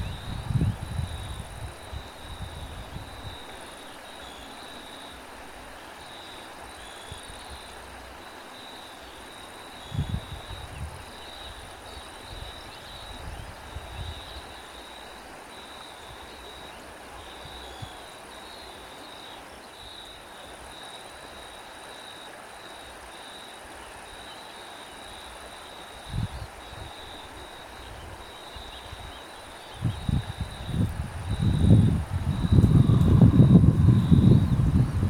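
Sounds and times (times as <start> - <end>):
wind rumbling on microphone: 0.0 - 3.7, 9.8 - 14.6, 26.0 - 35.0
crickets chirping: 0.0 - 35.0.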